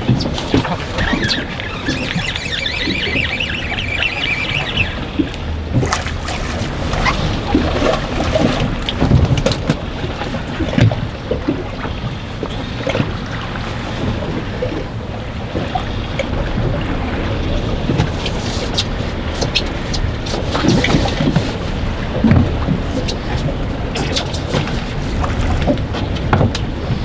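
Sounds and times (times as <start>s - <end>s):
high squeaking: 0.0s - 7.5s
water against boat hull: 0.0s - 27.0s
wind buffeting microphone: 0.0s - 27.0s
knocks from boat and gear: 22.2s - 26.8s.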